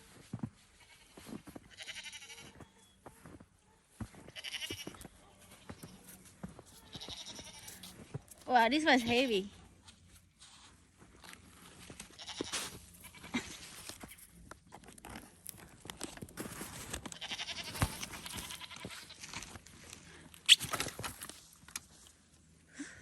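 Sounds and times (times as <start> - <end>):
goats bleating: 1.7 - 2.5, 4.3 - 5.0, 6.9 - 7.8, 17.2 - 17.7.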